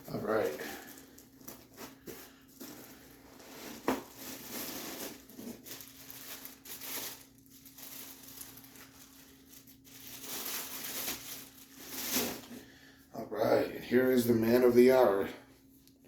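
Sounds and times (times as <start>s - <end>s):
rustling and crinkling: 0.0s - 12.8s.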